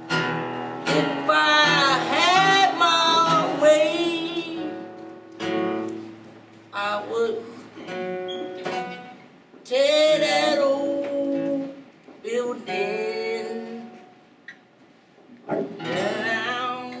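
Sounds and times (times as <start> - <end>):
person singing: 0.9 - 4.9, 9.7 - 14.0, 15.8 - 17.0.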